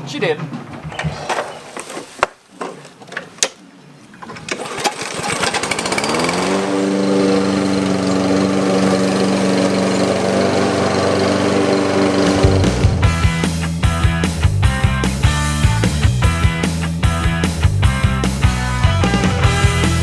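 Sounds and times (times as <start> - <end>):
lawn mower engine running: 4.5 - 14.1, 19.1 - 20.0.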